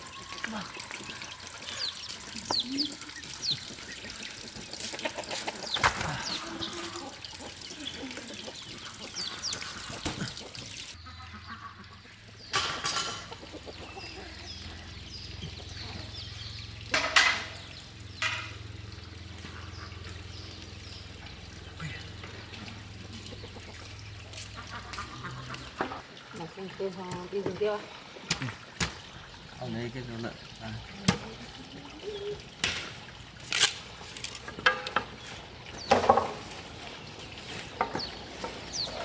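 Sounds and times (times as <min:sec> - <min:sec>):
poultry chirps and clicks: 0:00.0 - 0:12.6.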